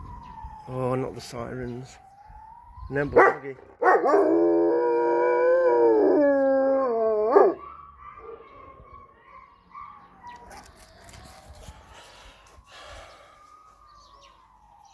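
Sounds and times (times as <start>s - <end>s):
distant siren wailing: 0.0s - 9.2s, 12.6s - 14.9s
dogs howling: 3.1s - 11.2s.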